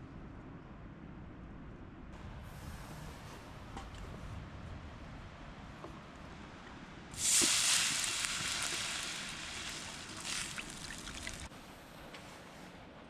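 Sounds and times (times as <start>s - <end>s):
sausages sizzling: 7.2s - 11.5s.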